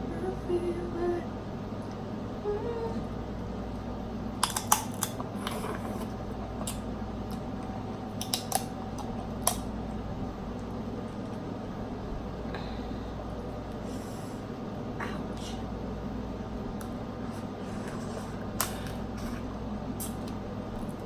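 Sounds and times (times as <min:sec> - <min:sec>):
crab shell cracking: 0:04.4 - 0:05.3, 0:08.2 - 0:09.7.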